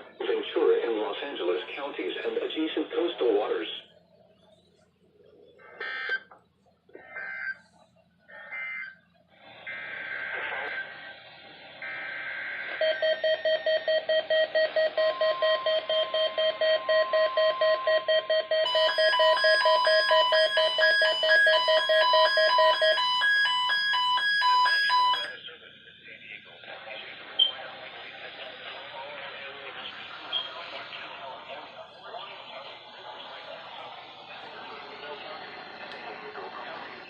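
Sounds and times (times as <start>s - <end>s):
data tone bursts: 11.8s - 25.4s
weather radio alarms beeping: 11.8s - 25.4s.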